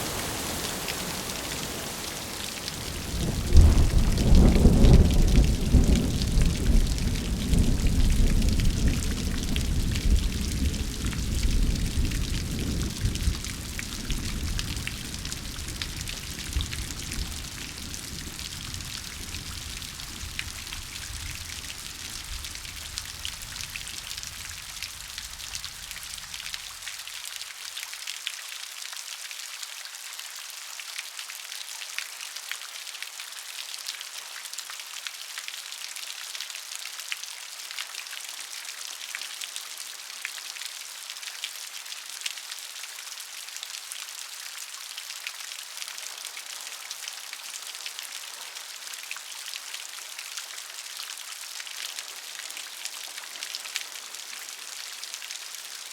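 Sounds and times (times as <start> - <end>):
steady rain patter: 0.0 - 55.9.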